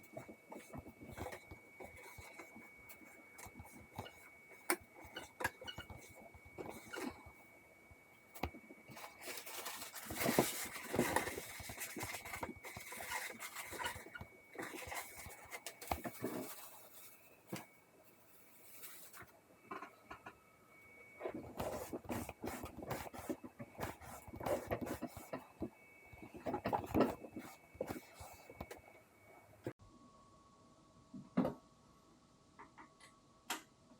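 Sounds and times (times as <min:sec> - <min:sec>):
faint high-pitched tone: 0:00.0 - 0:32.1
hands scraping and tapping parts: 0:08.4 - 0:17.7, 0:21.2 - 0:28.8.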